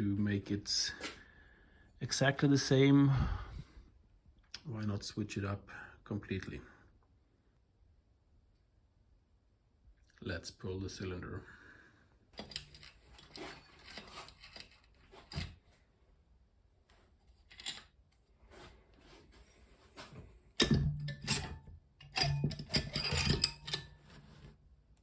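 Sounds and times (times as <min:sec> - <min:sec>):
metal clicks and knocks: 0:20.6 - 0:24.2.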